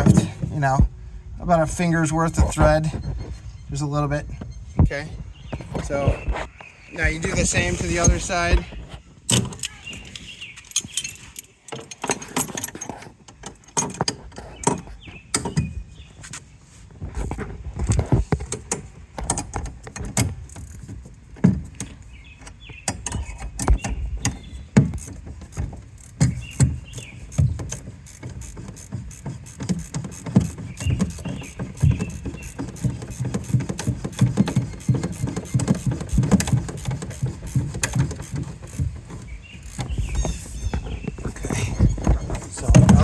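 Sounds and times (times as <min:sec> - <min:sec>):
ratcheting wrench clicking: 0:24.9 - 0:40.3.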